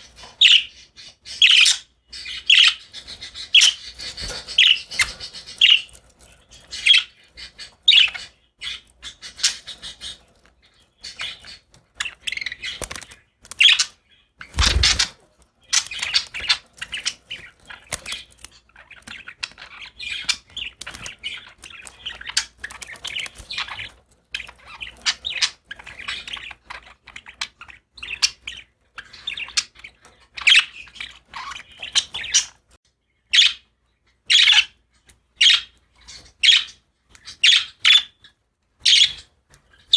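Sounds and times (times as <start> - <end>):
budgies chirping: 0.0 - 39.9.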